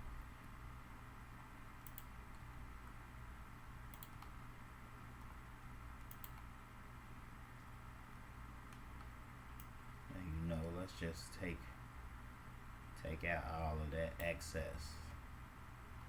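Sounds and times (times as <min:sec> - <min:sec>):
low electrical hum: 0:00.0 - 0:16.0
computer mouse clicks: 0:01.8 - 0:02.5, 0:03.9 - 0:04.4, 0:06.0 - 0:06.5, 0:08.7 - 0:09.8.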